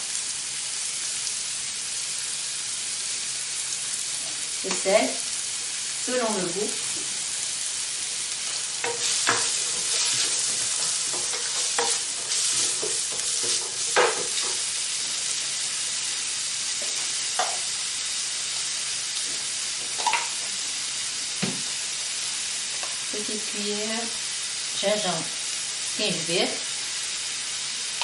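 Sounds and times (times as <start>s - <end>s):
onions sizzling in a pan: 0.0s - 28.0s
utensil scraping and knocking pan: 8.8s - 14.6s.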